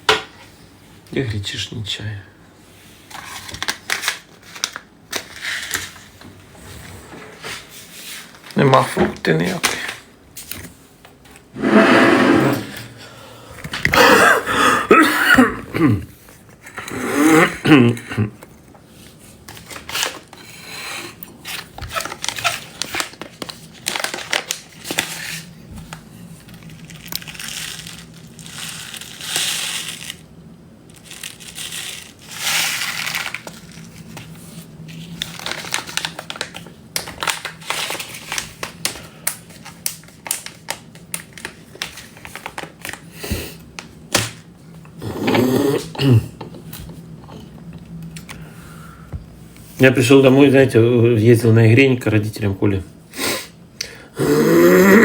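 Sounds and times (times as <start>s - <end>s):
crinkling and rustling: 3.0s - 11.5s, 21.4s - 43.1s.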